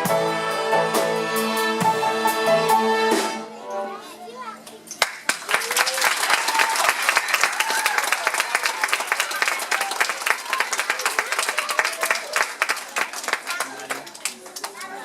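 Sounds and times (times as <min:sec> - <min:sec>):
music: 0:00.0 - 0:04.0
audience applauding: 0:05.0 - 0:15.0.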